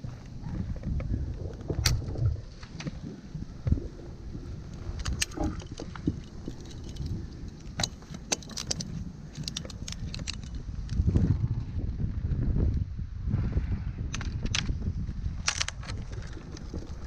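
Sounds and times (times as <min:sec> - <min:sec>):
low rumble: 0:00.0 - 0:17.0
metal carabiners clinking: 0:04.8 - 0:10.7.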